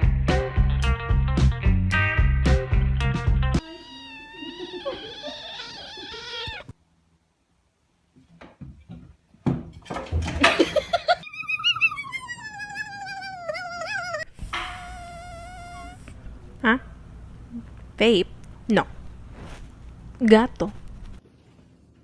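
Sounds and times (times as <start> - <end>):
cat yowling: 3.6 - 6.7, 11.2 - 16.2.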